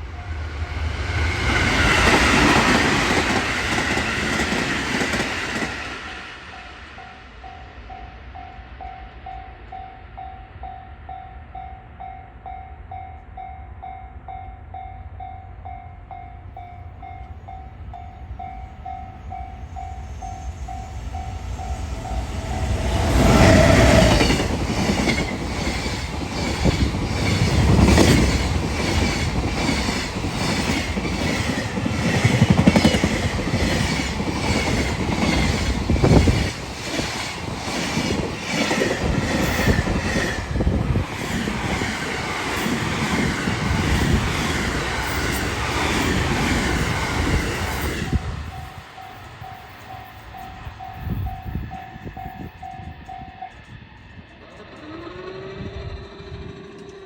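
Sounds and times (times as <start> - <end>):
train passing: 0.0 - 57.0
level-crossing warning bell: 5.6 - 37.1, 44.8 - 55.3
train wheels clicking over rail joints: 18.9 - 57.0.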